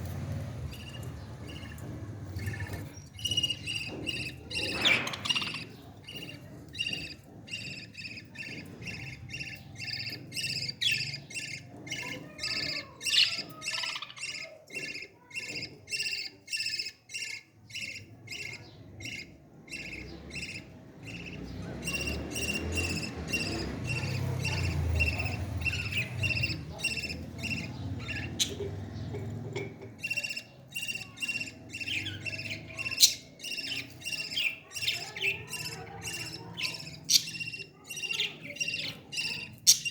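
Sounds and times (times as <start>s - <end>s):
parrot chicks chirping: 0.0s - 39.9s.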